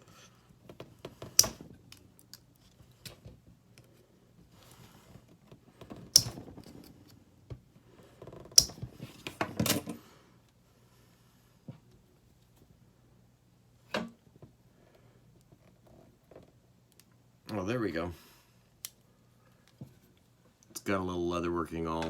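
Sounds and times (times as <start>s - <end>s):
metal clicks and scrapes of multitool: 6.2s - 6.4s
sharp snaps: 6.2s - 6.4s.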